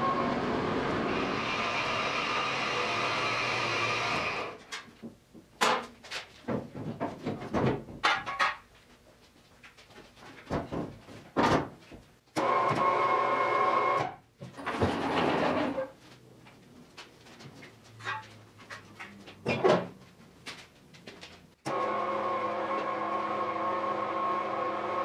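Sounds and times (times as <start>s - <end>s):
knocks and clatter: 4.6s - 8.7s, 9.6s - 12.2s.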